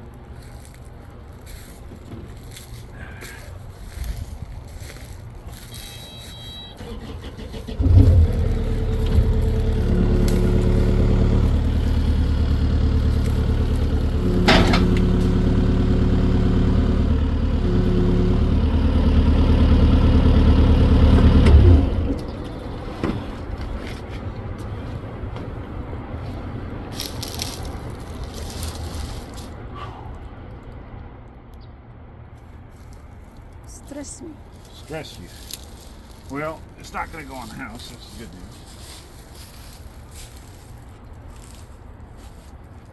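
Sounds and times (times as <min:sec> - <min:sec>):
rustling with cracks and clicks: 0:26.2 - 0:29.6, 0:34.5 - 0:42.9.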